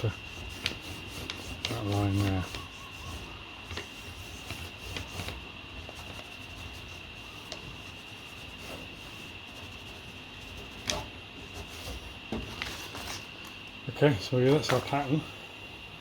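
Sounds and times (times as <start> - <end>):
pencil rubbing across paper: 0.0 - 13.4
faint high-pitched whine: 0.0 - 16.0.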